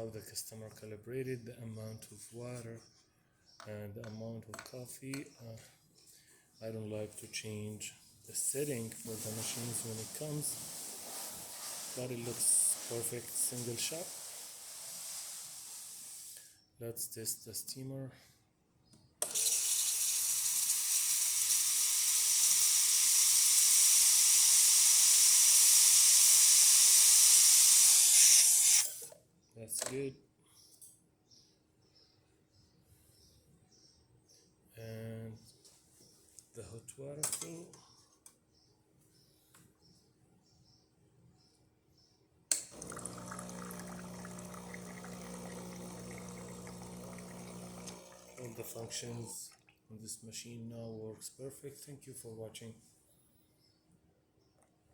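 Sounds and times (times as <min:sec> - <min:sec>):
water pouring: 0:09.0 - 0:15.4, 0:42.7 - 0:49.3
steam wand hissing: 0:09.0 - 0:16.5, 0:19.4 - 0:29.0, 0:42.7 - 0:48.7
espresso machine pump humming: 0:19.2 - 0:29.0, 0:42.5 - 0:49.3.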